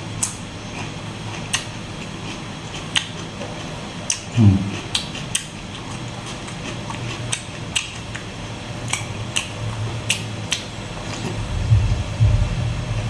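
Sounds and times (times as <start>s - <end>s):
wet eating clicks and smacks: 0.2s - 11.3s
low thuds: 11.3s - 13.0s.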